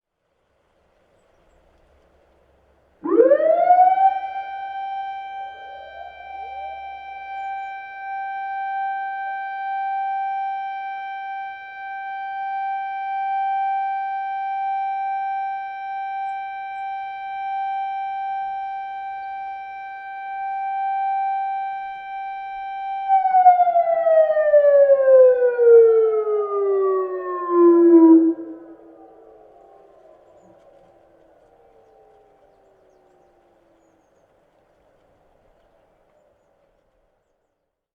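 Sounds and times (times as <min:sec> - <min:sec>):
electronic siren over loudspeaker: 0:03.0 - 0:32.2.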